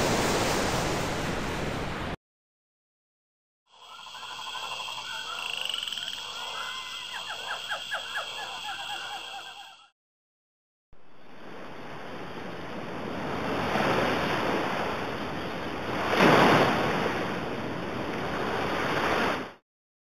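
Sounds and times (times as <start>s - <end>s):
ocean surf breaking: 0.0s - 2.2s, 11.1s - 19.6s.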